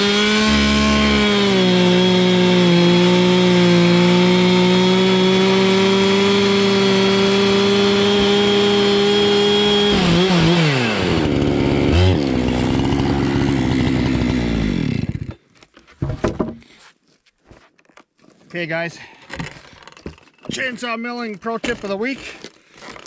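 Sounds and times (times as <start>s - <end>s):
chainsaw running: 0.0s - 15.4s.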